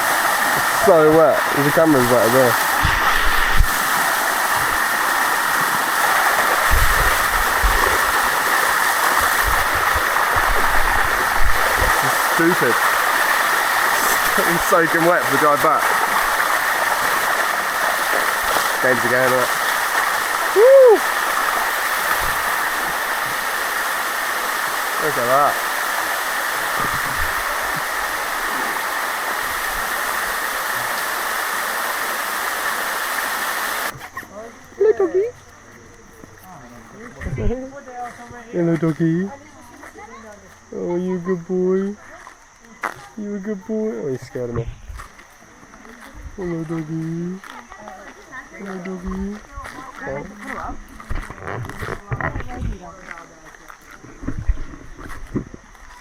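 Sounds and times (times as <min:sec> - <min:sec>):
waterfall rushing over rock: 0:00.0 - 0:34.1.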